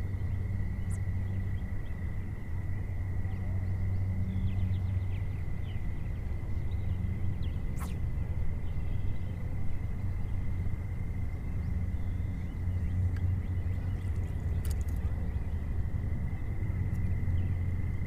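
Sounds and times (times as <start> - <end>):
faint bird chirps: 0.1 - 2.4.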